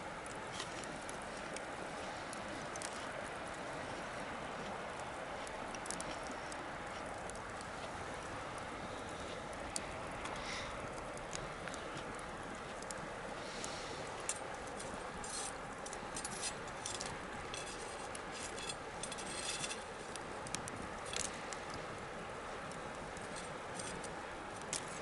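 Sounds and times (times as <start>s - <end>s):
bonfire crackling and popping: 0.0s - 25.0s
fire hiss: 7.4s - 25.0s.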